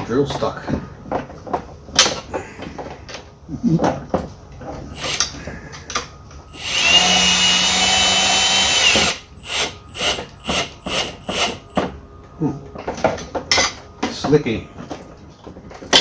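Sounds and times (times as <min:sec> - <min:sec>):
power drill running: 0:04.9 - 0:05.5, 0:06.5 - 0:11.9.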